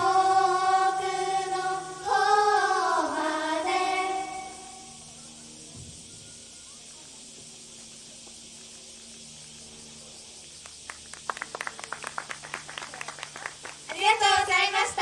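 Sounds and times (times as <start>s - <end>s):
insects droning: 0.0s - 15.0s
audience clapping: 10.9s - 14.0s.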